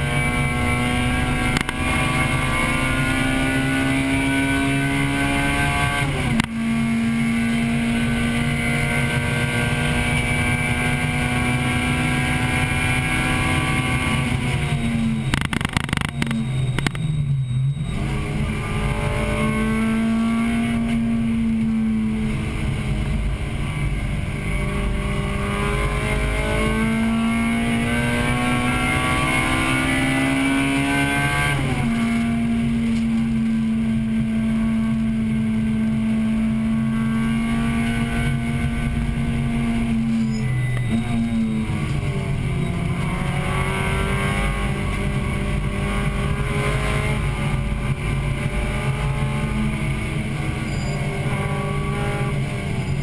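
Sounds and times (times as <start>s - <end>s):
car engine at high revs: 0.0s - 53.0s
sharp clicks of downshifting: 1.2s - 2.7s, 6.2s - 6.6s, 15.3s - 17.1s.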